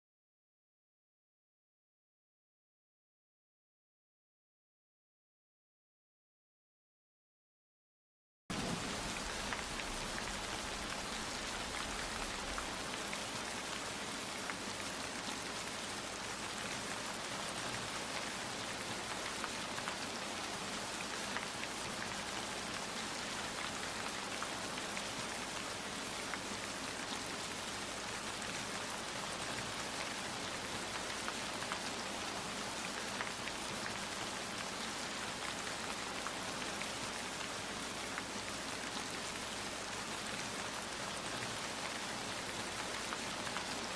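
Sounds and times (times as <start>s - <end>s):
rain pattering: 8.5s - 43.9s.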